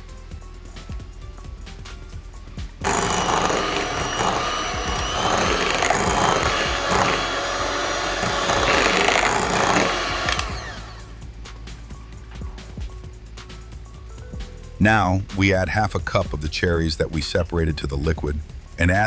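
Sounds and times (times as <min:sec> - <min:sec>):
electric mixer whirring: 0:02.8 - 0:11.2.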